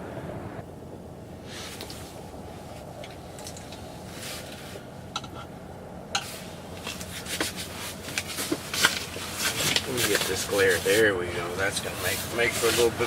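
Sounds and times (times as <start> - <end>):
steady low rumble: 0.0 - 13.0.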